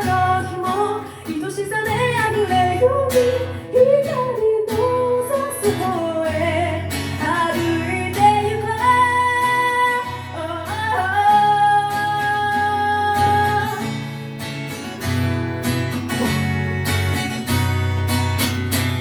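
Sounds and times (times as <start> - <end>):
person singing: 0.0 - 14.0
strummed acoustic guitar: 0.0 - 19.0.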